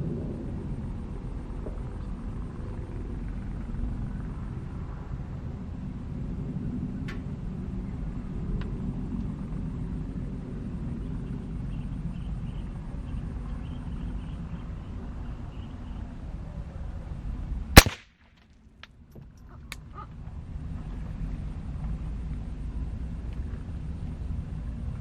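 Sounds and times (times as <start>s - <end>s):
rifle shot: 17.8s - 18.2s.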